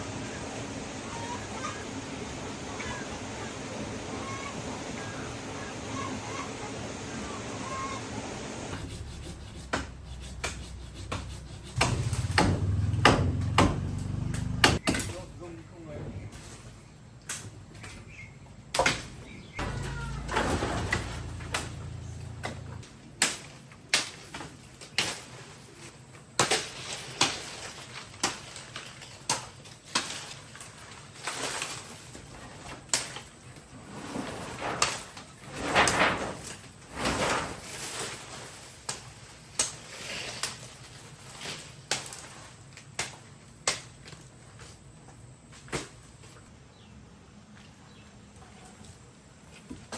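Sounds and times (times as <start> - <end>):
rough scraping: 8.7 - 14.8, 19.6 - 22.8
sharp knocks: 8.7 - 15.1.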